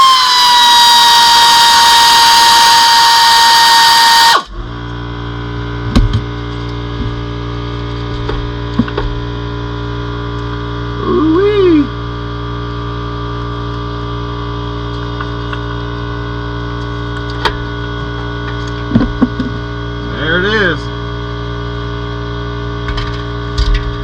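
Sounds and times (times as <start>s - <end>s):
power tool whining: 0.0s - 5.1s
steady low hum: 4.2s - 24.0s
metal knocks: 18.9s - 19.6s.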